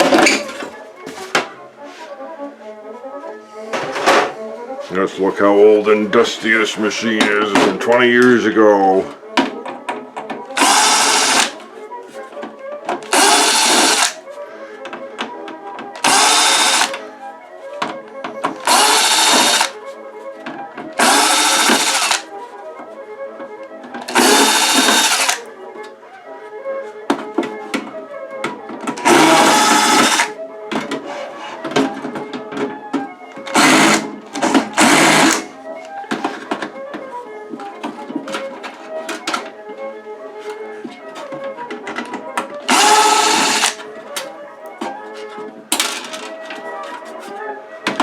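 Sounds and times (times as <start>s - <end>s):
background music: 0.0s - 48.0s
power drill bursts: 10.6s - 11.6s, 13.1s - 14.2s, 16.0s - 17.0s, 18.6s - 19.8s, 21.0s - 22.3s, 24.1s - 25.4s, 29.0s - 30.4s, 33.5s - 34.1s, 34.8s - 35.5s, 42.7s - 43.8s.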